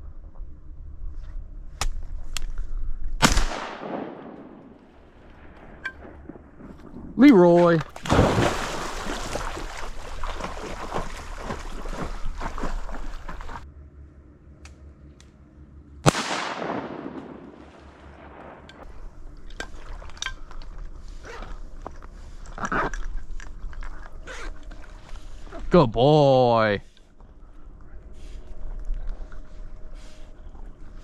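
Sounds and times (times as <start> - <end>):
shotgun shot with echo: 3.2 - 4.8, 16.1 - 18.9
water splashing and dripping: 7.2 - 13.6, 17.6 - 20.9.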